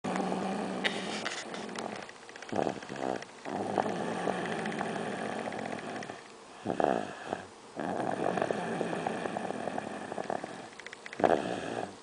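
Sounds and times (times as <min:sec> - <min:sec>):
boy snoring: 0:02.6 - 0:12.0.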